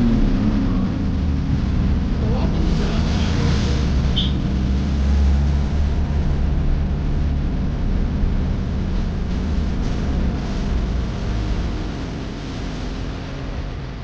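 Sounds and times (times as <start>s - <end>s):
flooding river roaring: 0.0s - 7.0s.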